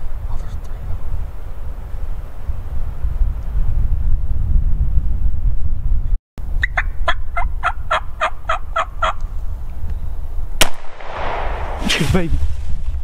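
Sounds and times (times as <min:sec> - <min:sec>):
wind rumbling on microphone: 0:00.0 - 0:13.0
turkey yelps: 0:06.6 - 0:09.2.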